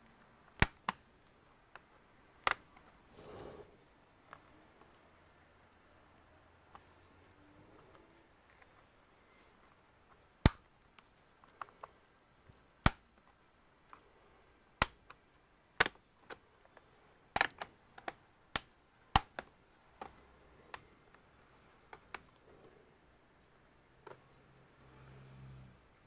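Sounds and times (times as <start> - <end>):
clicks of small tools and plastic parts: 15.8 - 21.2.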